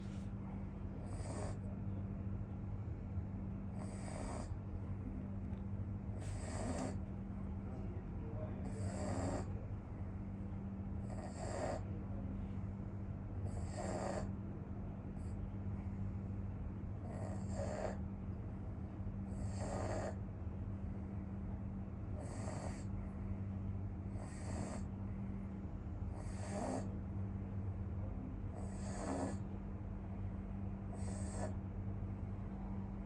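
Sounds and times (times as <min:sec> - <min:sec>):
steady low hum: 0:00.0 - 0:33.0
snoring with hissy rasp: 0:01.0 - 0:01.7, 0:03.8 - 0:04.6, 0:06.2 - 0:07.0, 0:08.6 - 0:09.6, 0:11.0 - 0:11.9, 0:13.4 - 0:14.3, 0:17.0 - 0:18.0, 0:19.3 - 0:20.2, 0:22.2 - 0:22.9, 0:24.1 - 0:24.9, 0:26.1 - 0:26.9, 0:28.5 - 0:29.4, 0:30.9 - 0:31.6
faint snuffle: 0:06.2 - 0:07.0, 0:08.6 - 0:09.6, 0:30.9 - 0:31.6.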